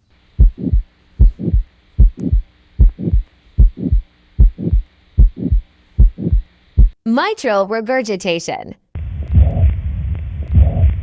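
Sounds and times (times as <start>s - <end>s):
heart murmur: 0.4s - 7.0s, 9.2s - 11.0s
heartbeat through stethoscope: 0.4s - 7.0s, 9.0s - 11.0s.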